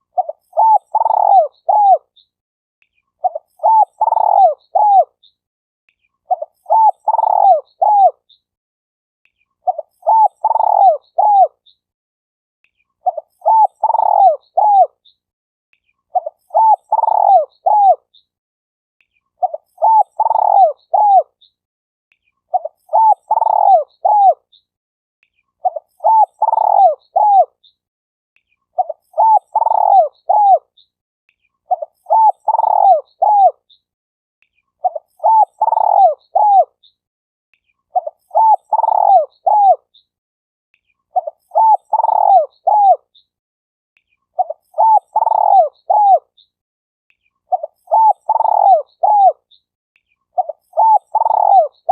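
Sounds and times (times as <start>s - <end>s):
dove cooing: 0.1s - 2.1s, 3.2s - 5.1s, 6.3s - 8.2s, 9.7s - 11.6s, 13.0s - 15.0s, 16.2s - 18.0s, 19.4s - 21.3s, 22.5s - 24.4s, 25.6s - 27.5s, 28.8s - 30.6s, 31.7s - 33.6s, 34.8s - 36.7s, 38.0s - 39.8s, 41.2s - 43.0s, 44.4s - 46.3s, 47.5s - 49.4s, 50.4s - 51.9s.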